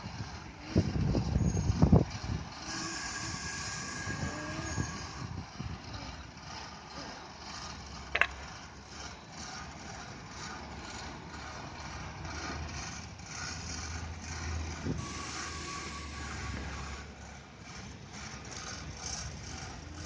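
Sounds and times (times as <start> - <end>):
heavy engine running: 0.0 - 20.0
high squeal: 1.3 - 2.0, 2.6 - 5.4, 14.8 - 17.2.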